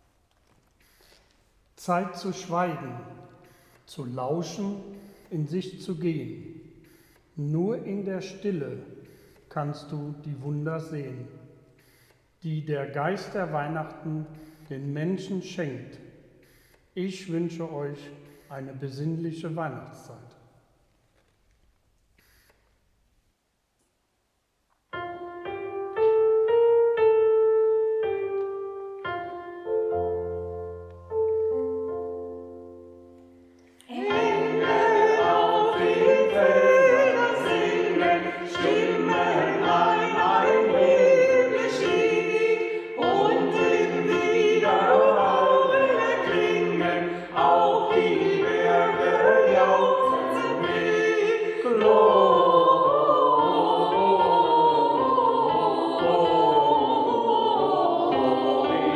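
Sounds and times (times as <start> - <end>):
piano notes and chords: 25.0 - 52.7
choir singing: 33.8 - 58.9.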